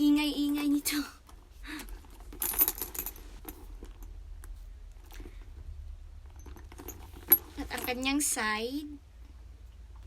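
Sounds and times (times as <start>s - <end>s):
metal hardware clinking: 2.1s - 4.1s, 6.2s - 8.2s.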